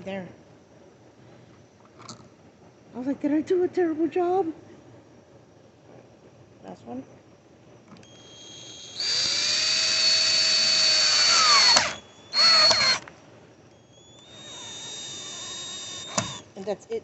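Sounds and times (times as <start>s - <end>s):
cordless drill driving a screw: 8.0s - 13.1s, 13.8s - 16.5s.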